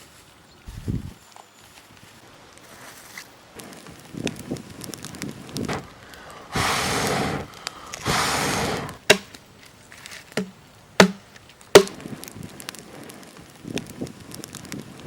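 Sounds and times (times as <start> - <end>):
sharp cracks: 3.6 - 15.0
long rushes of air: 4.1 - 9.1.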